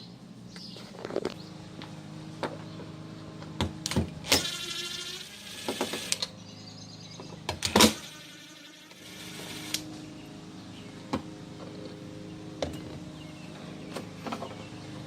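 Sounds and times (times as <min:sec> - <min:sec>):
small motor whirring: 0:04.0 - 0:06.4, 0:07.5 - 0:10.1.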